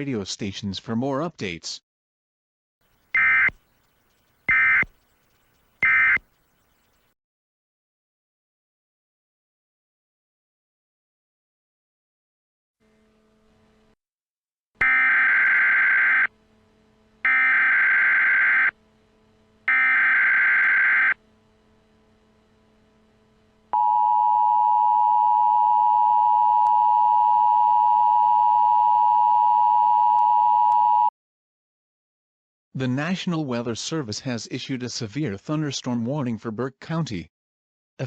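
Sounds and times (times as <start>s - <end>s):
electronic data burst screech: 3.2s - 3.5s, 4.5s - 4.9s, 5.8s - 6.2s.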